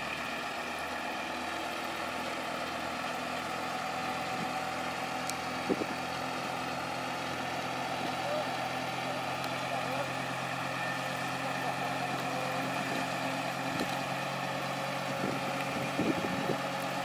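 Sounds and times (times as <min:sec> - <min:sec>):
diesel engine running at low revs: 0:00.0 - 0:17.0.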